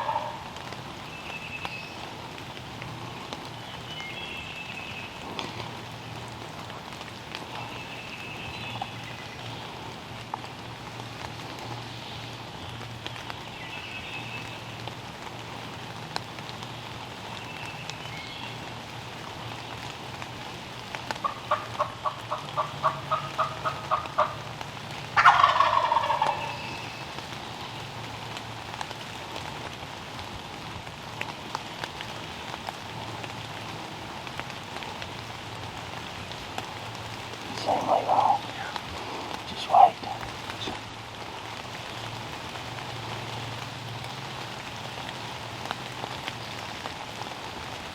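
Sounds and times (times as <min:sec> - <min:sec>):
quick turkey yelps: 0:00.0 - 0:00.4, 0:25.2 - 0:26.6
wild turkey gobbling: 0:00.0 - 0:00.6, 0:21.2 - 0:24.5, 0:25.2 - 0:27.0, 0:37.5 - 0:40.8
light rain patter: 0:00.0 - 0:47.9
small birds chirping: 0:37.2 - 0:40.8.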